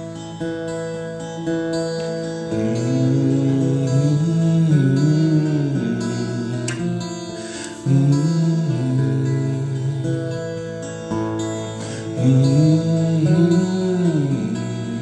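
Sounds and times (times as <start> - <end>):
acoustic guitar chords and notes: 0.0 - 15.0
person singing: 2.5 - 10.8, 11.6 - 15.0.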